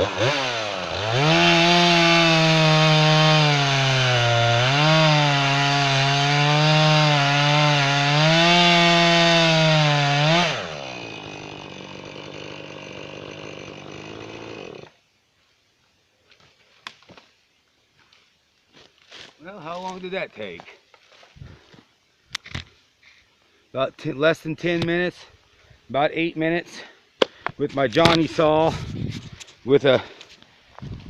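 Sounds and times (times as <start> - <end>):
chainsaw cutting wood: 0.0 - 15.0
chainsaw idling: 0.0 - 15.0.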